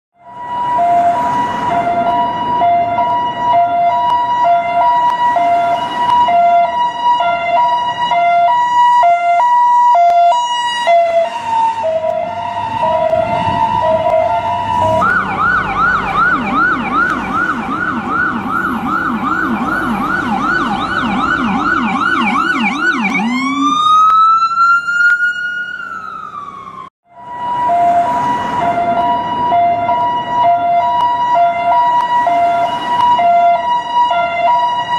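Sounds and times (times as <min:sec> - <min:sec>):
ambulance siren: 0:00.2 - 0:34.9.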